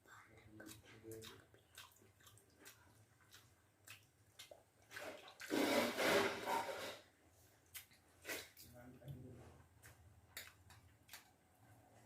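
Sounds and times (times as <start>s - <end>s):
small clicks of eating: 0.0s - 4.8s, 7.6s - 11.7s
water sloshing in a bowl: 0.2s - 7.0s.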